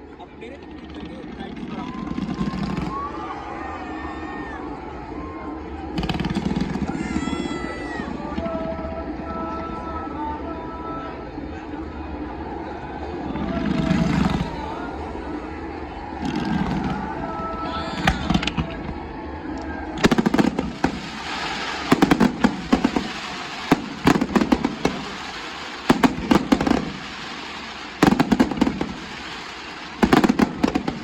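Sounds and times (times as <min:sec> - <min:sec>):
fireworks bursting: 0:00.8 - 0:03.2, 0:05.8 - 0:09.4, 0:13.4 - 0:14.8, 0:16.1 - 0:19.1, 0:19.9 - 0:31.0
crackling bangs: 0:06.0 - 0:09.0, 0:20.0 - 0:31.0.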